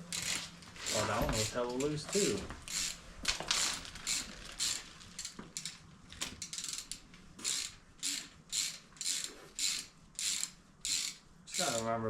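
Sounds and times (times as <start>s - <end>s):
ratchet wrench clicking: 0.1s - 1.1s, 1.8s - 3.0s, 4.1s - 5.8s, 6.4s - 11.9s.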